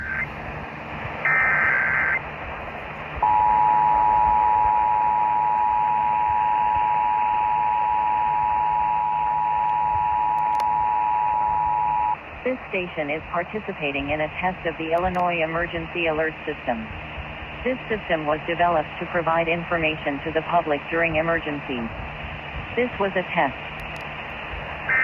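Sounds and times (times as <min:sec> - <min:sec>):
warbling data tones: 0:00.0 - 0:00.4, 0:01.1 - 0:12.2
radio hiss: 0:00.0 - 0:25.0.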